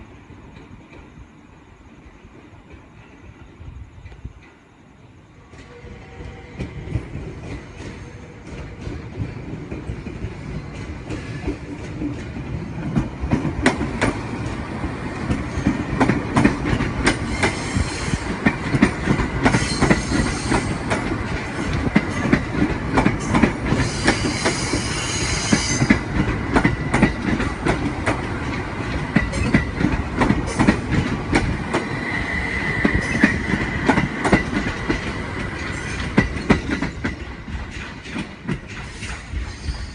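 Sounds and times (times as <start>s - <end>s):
train wheels clattering over track: 5.4s - 39.9s
high wheel squeal: 23.8s - 26.0s.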